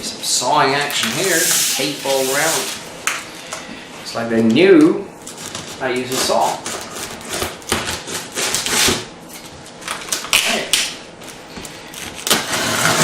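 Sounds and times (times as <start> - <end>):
saw rasping through cardboard: 12.3 - 13.0.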